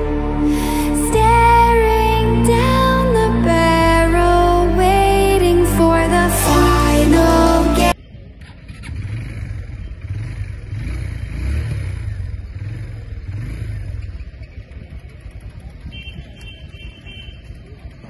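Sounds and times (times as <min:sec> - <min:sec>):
motorcycle engine revving and idling: 0:07.9 - 0:18.0.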